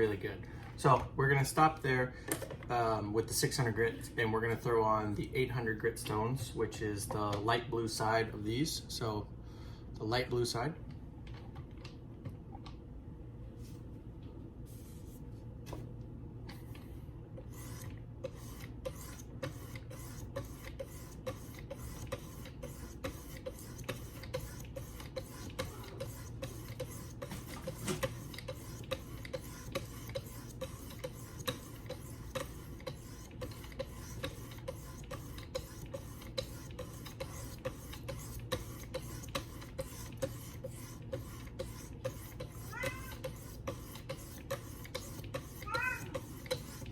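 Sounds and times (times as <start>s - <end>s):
sharpening stone rasping on knife: 17.5s - 46.9s.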